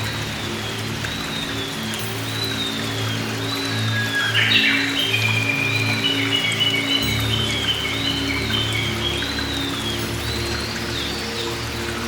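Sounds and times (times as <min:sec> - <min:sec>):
ambient droning music: 0:00.0 - 0:12.0
rain pattering: 0:00.0 - 0:12.0.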